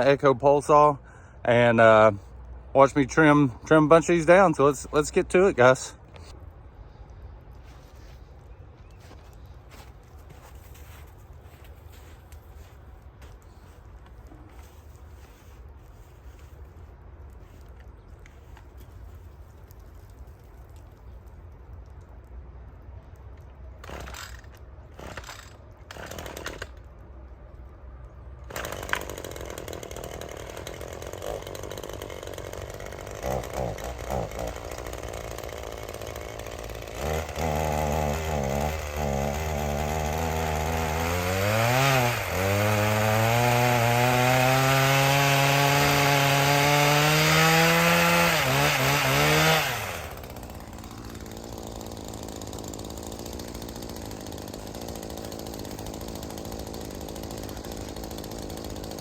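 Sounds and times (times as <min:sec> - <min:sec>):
small two-stroke engine running: 0:28.5 - 0:59.0.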